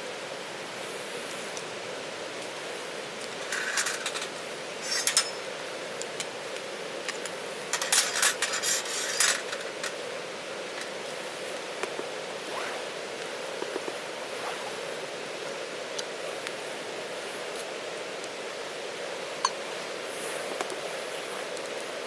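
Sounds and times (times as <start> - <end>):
river rushing: 0.0 - 22.0
hard objects clinking and scraping: 3.4 - 5.4, 7.2 - 10.0.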